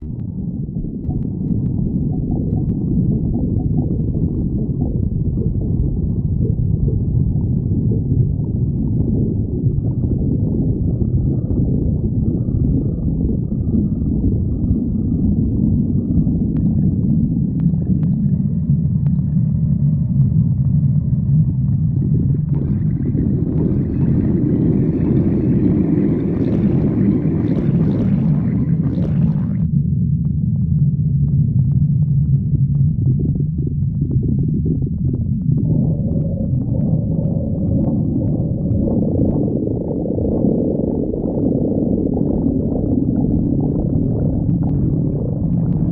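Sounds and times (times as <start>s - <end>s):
stomach growling: 0.0s - 45.9s.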